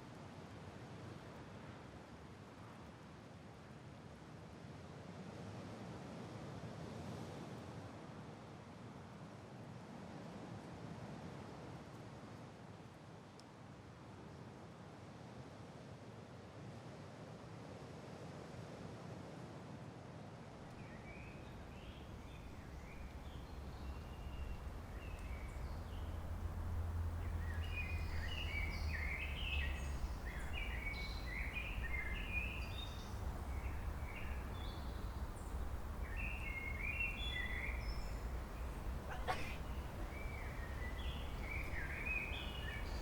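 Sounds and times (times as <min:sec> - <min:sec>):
birds chirping: 0:20.8 - 0:43.0
steady low rumble: 0:20.8 - 0:43.0.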